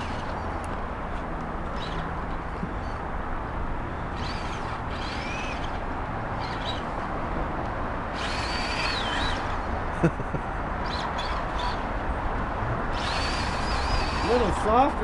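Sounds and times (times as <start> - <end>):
birds whistling: 6.4 - 6.9.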